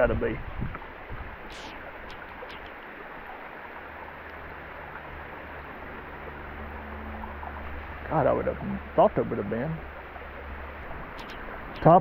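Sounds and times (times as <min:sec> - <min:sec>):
creek running: 0:00.0 - 0:12.0
heavy rain hissing: 0:01.5 - 0:02.8
sharp ticks: 0:01.5 - 0:02.8, 0:11.1 - 0:12.0.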